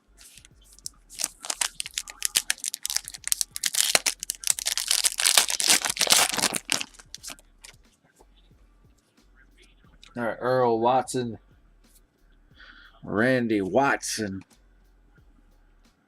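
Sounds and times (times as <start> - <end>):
foil wrapper tearing and crinkling: 0.2 - 7.4.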